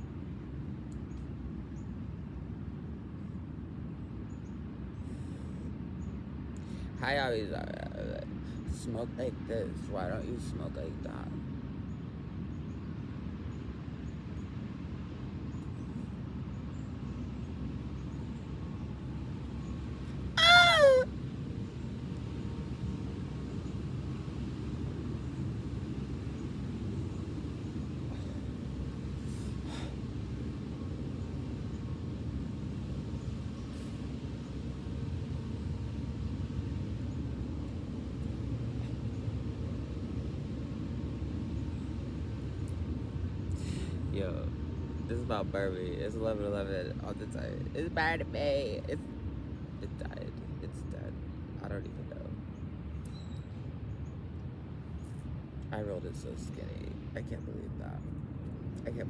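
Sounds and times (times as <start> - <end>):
low background rumble: 0.0 - 59.0
short falling call: 20.4 - 21.1.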